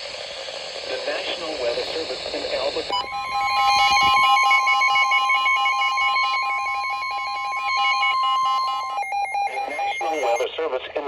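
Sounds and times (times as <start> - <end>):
steady alert tone: 2.9 - 10.4
stepping electronic beeps: 2.9 - 10.5.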